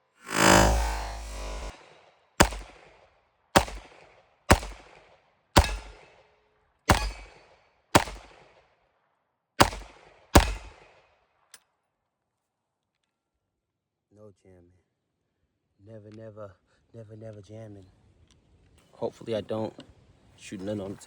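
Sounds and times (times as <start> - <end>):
gunshots with echo: 1.7 - 3.0, 3.6 - 6.3, 6.9 - 8.6, 9.6 - 11.0.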